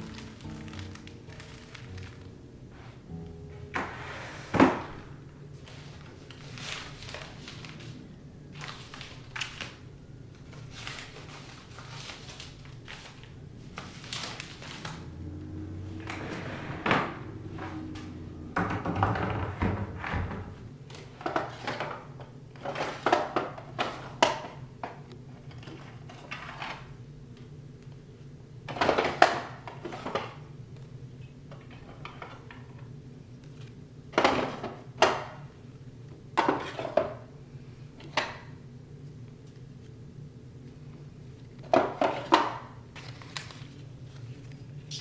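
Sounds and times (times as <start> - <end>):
rustling: 0.0 - 18.4
low steady hum: 0.0 - 45.0
items knocking and clattering: 16.0 - 26.8, 34.1 - 35.4, 36.4 - 37.2, 41.6 - 43.1.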